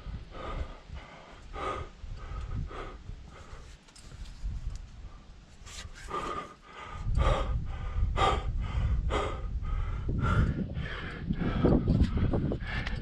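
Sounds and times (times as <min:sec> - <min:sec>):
person breathing hard: 0:00.0 - 0:03.8, 0:06.0 - 0:13.0
low rumbling noise: 0:06.1 - 0:13.0.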